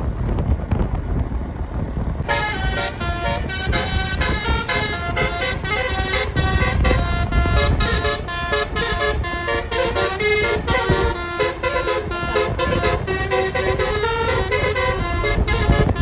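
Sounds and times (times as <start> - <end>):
bus horn playing melody: 2.2 - 16.0.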